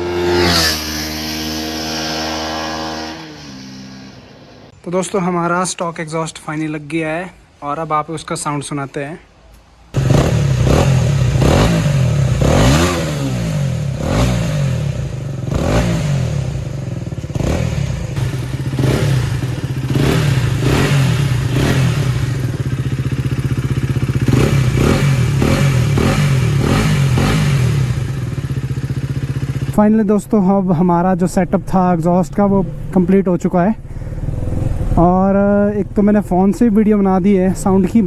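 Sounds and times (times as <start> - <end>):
motorcycle engine revving: 0.0 - 4.7, 10.0 - 38.0.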